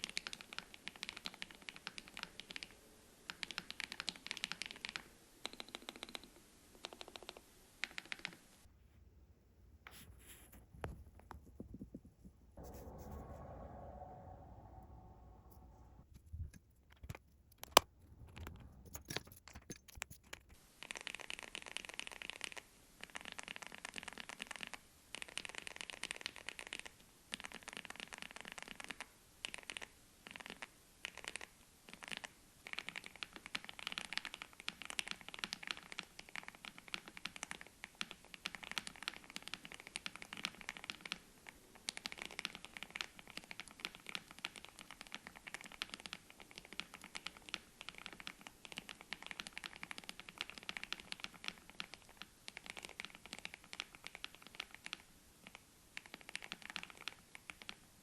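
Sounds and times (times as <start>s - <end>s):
mechanical keyboard typing: 3.3s - 8.4s, 18.9s - 57.8s.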